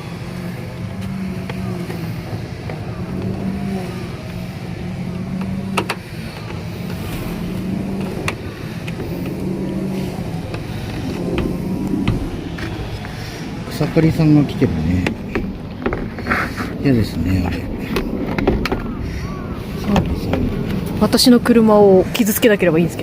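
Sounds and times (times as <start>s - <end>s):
lawn mower engine running: 0.0s - 22.9s.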